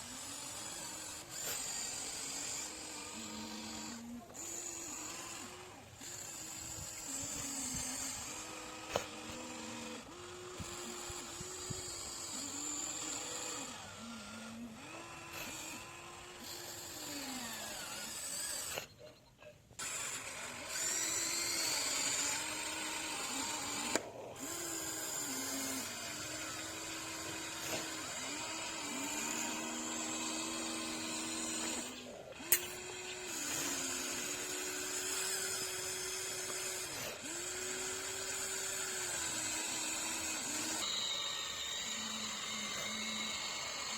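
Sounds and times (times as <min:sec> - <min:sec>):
electric motors whining: 0:00.0 - 0:43.9
sharp click: 0:32.5 - 0:32.8.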